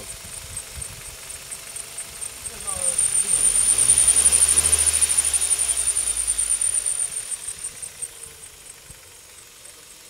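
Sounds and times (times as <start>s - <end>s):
car engine running: 0.0s - 10.0s
drive belt squealing: 2.4s - 8.8s.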